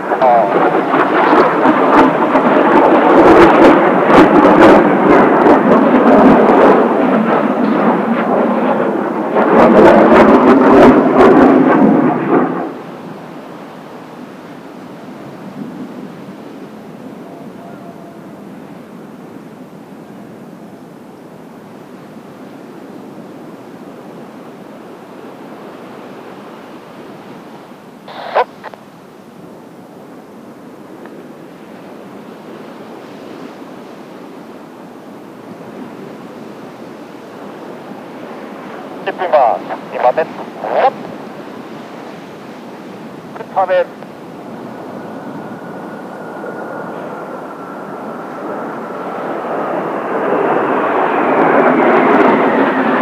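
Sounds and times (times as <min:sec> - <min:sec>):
jet aircraft roar: 0:00.0 - 0:53.0
surf on shoreline: 0:00.0 - 0:53.0
wind: 0:00.0 - 0:53.0
steady hiss: 0:25.6 - 0:45.5.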